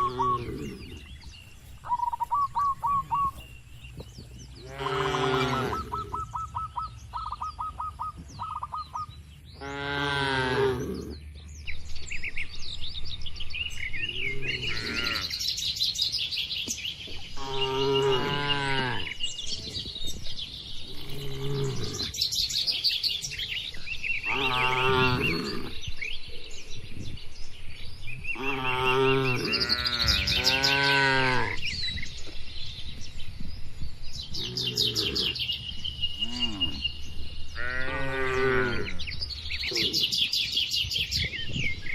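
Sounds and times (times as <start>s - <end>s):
small birds chirping: 0.0s - 41.9s
cows mooing: 4.6s - 6.2s, 9.6s - 11.2s, 14.2s - 15.4s, 24.3s - 25.8s, 28.4s - 31.6s, 37.6s - 39.0s.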